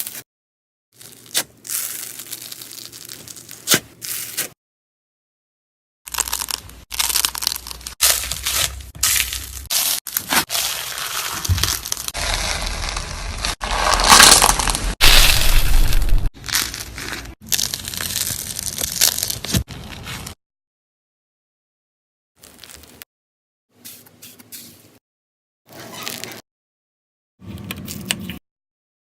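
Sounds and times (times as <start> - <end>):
slime crackling and popping: 6.1 - 19.6.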